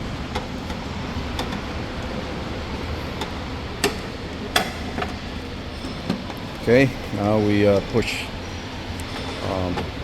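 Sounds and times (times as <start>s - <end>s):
steady hum: 0.0s - 10.0s.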